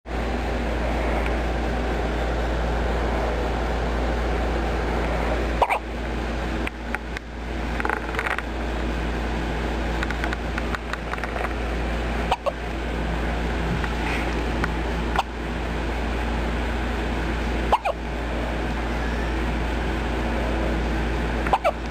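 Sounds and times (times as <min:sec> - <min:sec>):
steady low hum: 0:00.1 - 0:21.9
person hiccuping: 0:05.6 - 0:05.8, 0:12.3 - 0:12.6, 0:17.7 - 0:18.0, 0:21.4 - 0:21.8.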